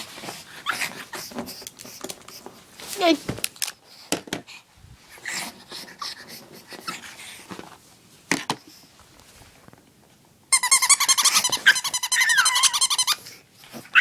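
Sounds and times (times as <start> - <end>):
dog whimpering: 10.8 - 13.2.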